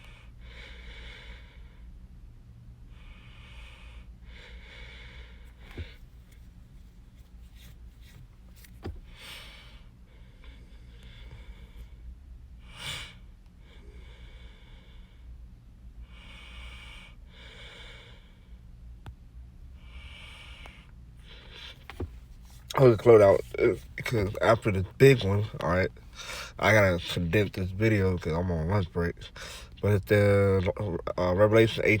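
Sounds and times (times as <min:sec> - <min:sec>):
person breathing: 0:00.0 - 0:01.9, 0:02.9 - 0:06.0, 0:09.0 - 0:15.4, 0:16.0 - 0:18.6, 0:19.8 - 0:24.6, 0:25.2 - 0:26.6, 0:29.2 - 0:29.9.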